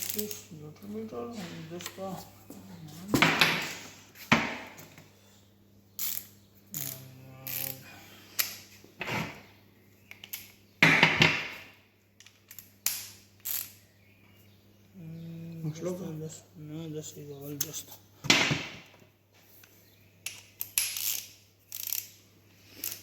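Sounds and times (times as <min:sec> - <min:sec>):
ratchet wrench clicking: 0:00.0 - 0:00.4, 0:20.2 - 0:22.2, 0:22.8 - 0:23.0.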